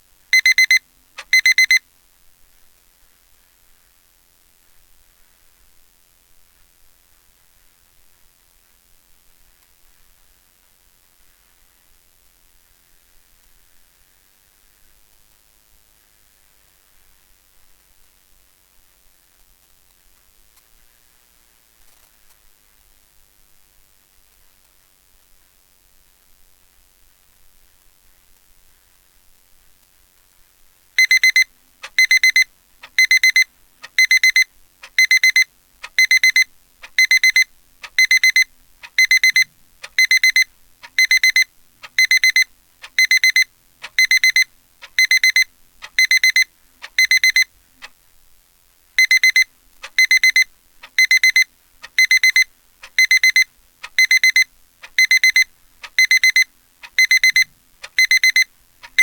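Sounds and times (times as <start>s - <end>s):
digital alarm clock beeping: 0.4s - 1.8s, 31.0s - 47.5s, 49.0s - 59.0s.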